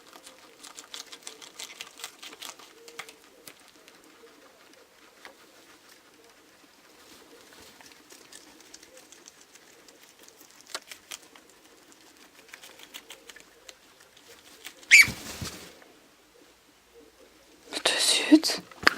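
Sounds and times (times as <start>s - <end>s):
faint low murmur: 0.0s - 18.9s
guinea pigs munching lettuce: 0.0s - 18.9s.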